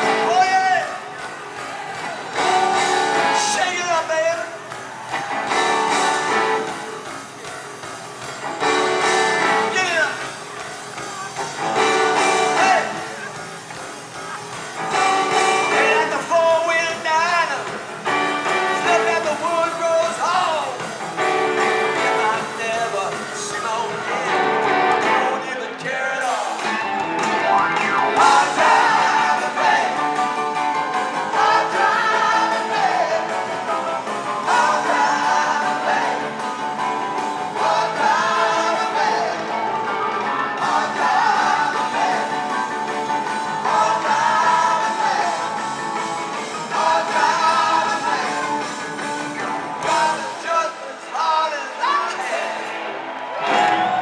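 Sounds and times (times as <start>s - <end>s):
guitar: 0.0s - 54.0s
live rock band: 0.0s - 54.0s
person singing: 14.8s - 17.7s, 28.0s - 30.6s, 31.2s - 49.0s, 49.8s - 52.6s
electric guitar lick: 26.6s - 34.4s.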